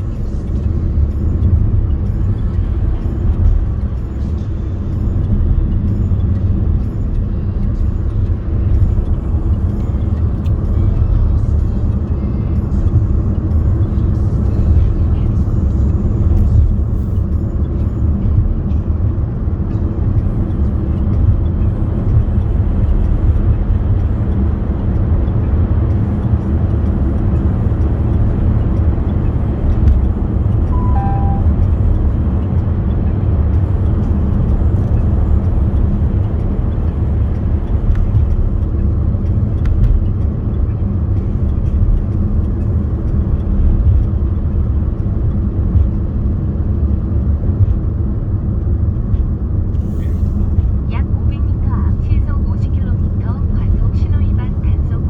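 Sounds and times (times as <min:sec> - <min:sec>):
car road and engine rumble: 0:00.0 - 0:55.0
two-note falling chime: 0:30.8 - 0:31.7.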